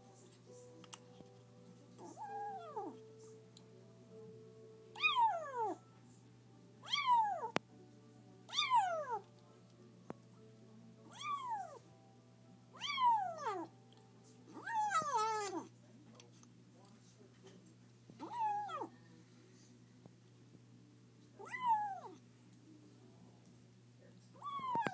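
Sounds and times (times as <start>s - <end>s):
kitten mewing: 2.0s - 3.0s, 5.0s - 5.8s, 6.8s - 7.5s, 8.5s - 9.2s, 11.1s - 11.8s, 12.8s - 13.7s, 14.5s - 15.7s, 18.2s - 18.9s, 21.4s - 22.2s, 24.4s - 24.9s.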